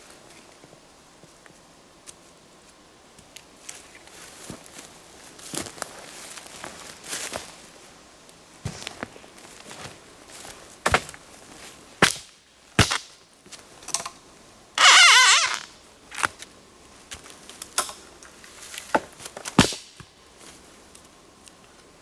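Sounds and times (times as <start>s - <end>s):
dry sticks snapping: 12.0s - 13.1s, 17.2s - 20.1s.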